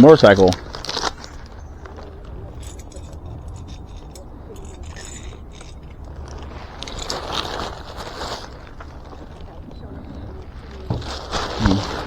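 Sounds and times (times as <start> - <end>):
steady low rumble: 0.0 - 12.0
metallic clicks and scrapes: 0.6 - 8.5.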